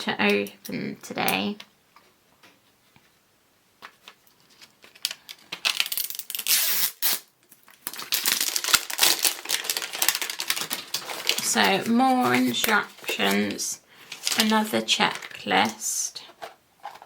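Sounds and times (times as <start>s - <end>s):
plastic and cardboard rustling: 3.8s - 6.5s, 7.4s - 17.0s
packaging crinkling and tearing: 3.8s - 15.7s
packaging clicks: 4.6s - 12.8s.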